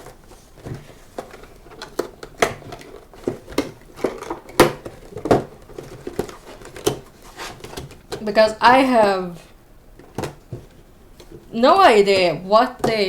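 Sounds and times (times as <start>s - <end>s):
plastic packaging crackling and snapping: 0.0s - 8.3s.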